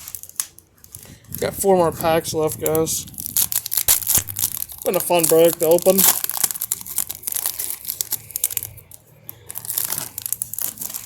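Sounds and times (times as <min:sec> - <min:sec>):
wrapper crinkling and tearing: 0:00.0 - 0:11.0.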